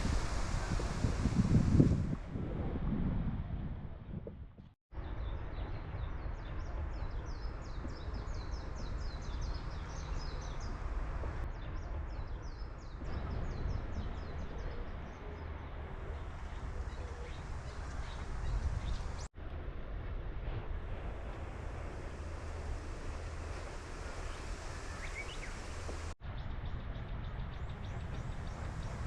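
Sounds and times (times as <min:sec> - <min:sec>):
wind rumble on microphone: 0:00.0 - 0:29.0
small birds chirping: 0:05.1 - 0:19.3, 0:21.9 - 0:29.0.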